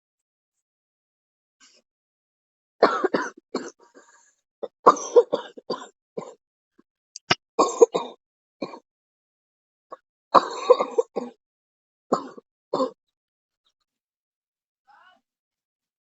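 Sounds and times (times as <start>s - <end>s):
person coughing: 10.4s - 11.4s.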